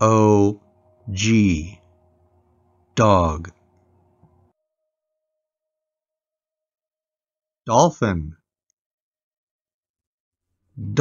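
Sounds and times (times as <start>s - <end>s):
faint electronic hum: 0.0s - 4.6s.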